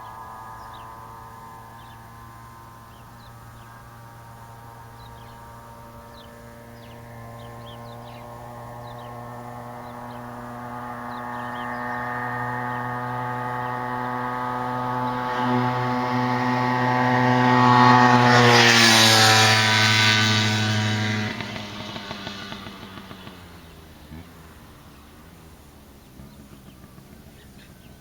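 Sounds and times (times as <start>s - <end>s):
moped engine passing by: 0.0s - 28.0s.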